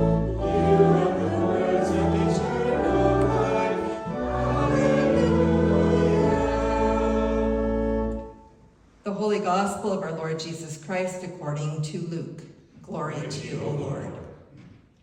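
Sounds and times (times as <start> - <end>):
congregation singing: 0.0 - 8.5.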